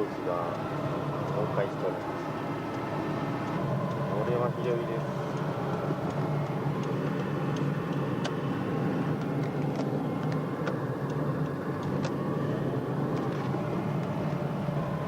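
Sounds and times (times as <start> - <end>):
car engine and road noise: 0.0 - 15.0.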